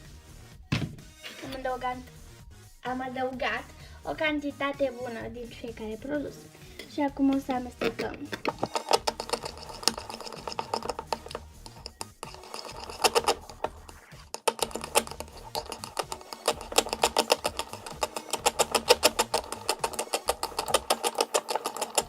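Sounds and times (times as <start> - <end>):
spoon stirring and clicking in bowl: 6.7 - 22.0.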